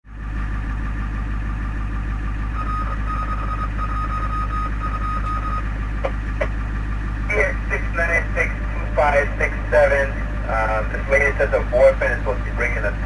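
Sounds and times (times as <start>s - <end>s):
ambulance engine idling: 0.0s - 13.0s
short electronic beeps: 2.4s - 5.7s.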